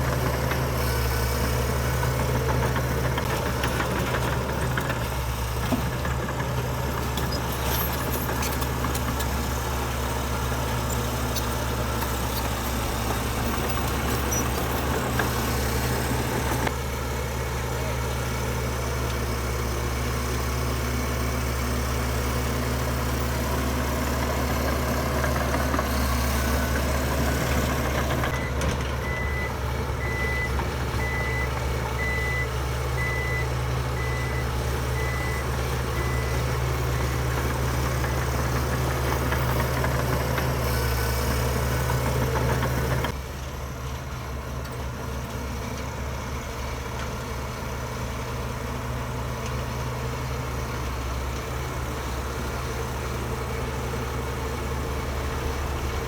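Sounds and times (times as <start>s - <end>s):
diesel machinery engine running: 0.0s - 56.0s
reversing alarm beeping: 27.3s - 37.4s.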